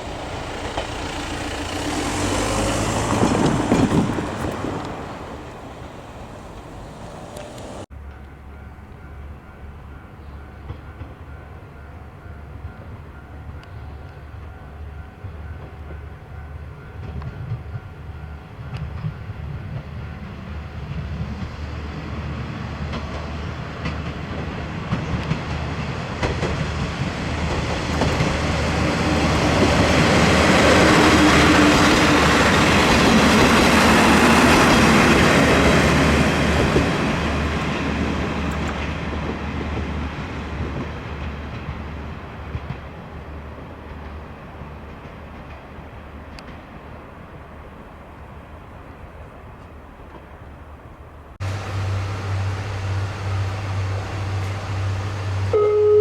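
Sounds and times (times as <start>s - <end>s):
wheels clicking over rail joints: 0.0s - 7.9s, 21.1s - 48.2s
diesel railcar passing: 0.0s - 56.0s.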